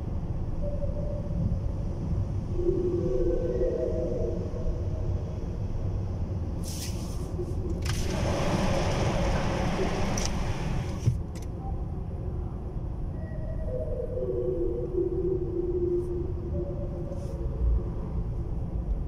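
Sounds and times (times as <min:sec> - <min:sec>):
car road rumble: 0:03.9 - 0:14.1, 0:14.7 - 0:19.0
rushing noise: 0:06.6 - 0:11.1.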